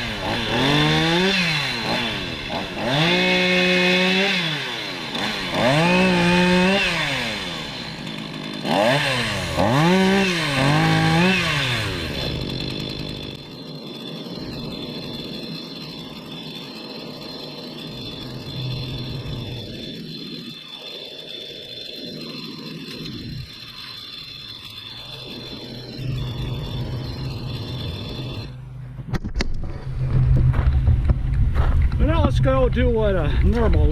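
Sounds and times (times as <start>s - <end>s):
chainsaw revving: 0.0s - 28.9s.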